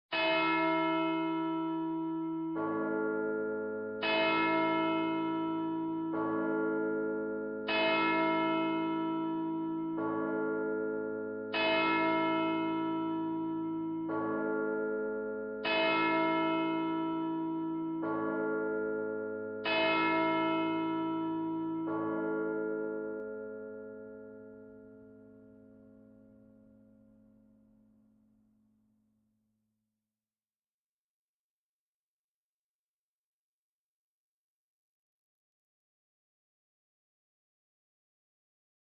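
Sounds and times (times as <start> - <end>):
church bells ringing ding-dong: 0.1 - 28.7.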